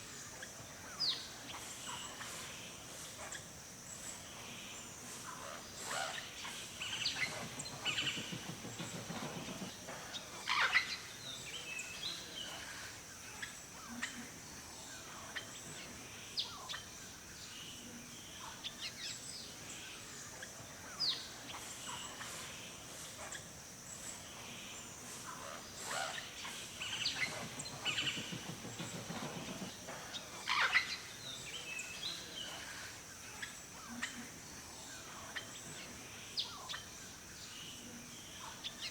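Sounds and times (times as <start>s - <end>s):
steady high-pitched hiss: 0.0s - 38.9s
birds chirping and calling: 21.0s - 34.2s.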